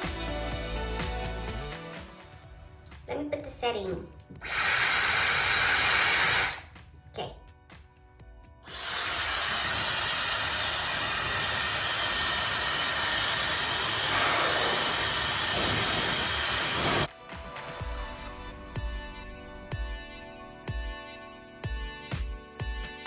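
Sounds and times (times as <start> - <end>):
hair dryer blowing: 4.4 - 6.7, 8.6 - 17.1.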